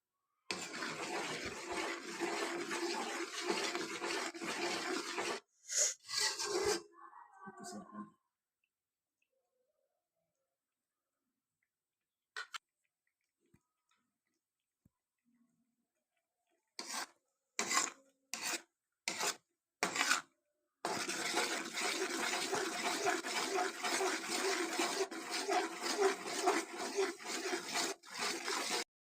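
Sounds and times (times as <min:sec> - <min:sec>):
spatula scraping in pan: 0:00.5 - 0:05.4, 0:06.0 - 0:06.9, 0:16.8 - 0:20.3, 0:20.9 - 0:28.9.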